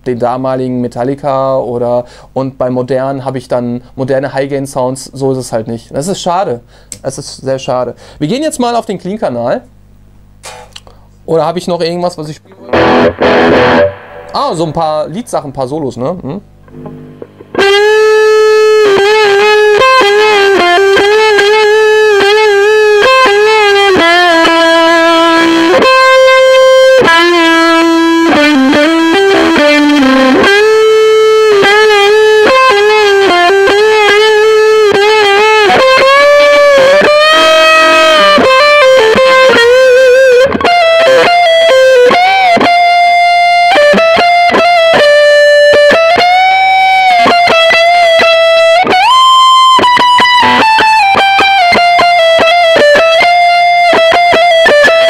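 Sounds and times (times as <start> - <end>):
distorted electric guitar lead: 12.3 - 55.0.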